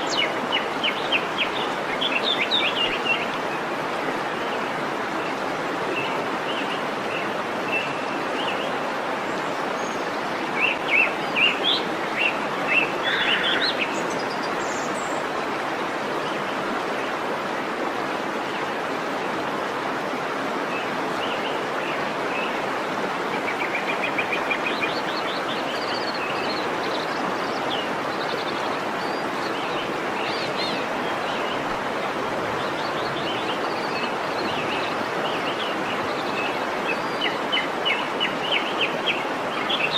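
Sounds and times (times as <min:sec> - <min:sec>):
waterfall rushing: 0:00.0 - 0:39.9
birds chirping: 0:06.0 - 0:15.3, 0:23.4 - 0:39.9.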